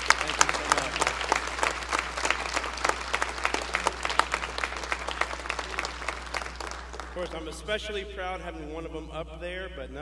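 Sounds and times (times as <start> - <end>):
congregation applauding: 0.0 - 7.8.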